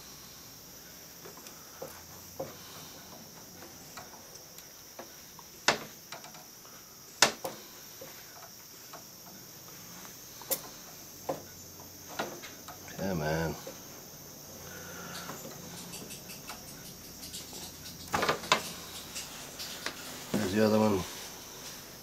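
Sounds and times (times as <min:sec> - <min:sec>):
faint steady high hiss: 0:00.0 - 0:22.0
metal tools clicking on circuit board: 0:15.2 - 0:19.7.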